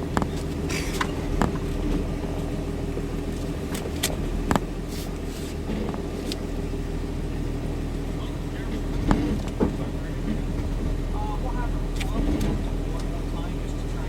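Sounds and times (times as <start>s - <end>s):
engine running at low revs: 0.0s - 14.0s
sharp clicks and knocks: 0.1s - 6.5s.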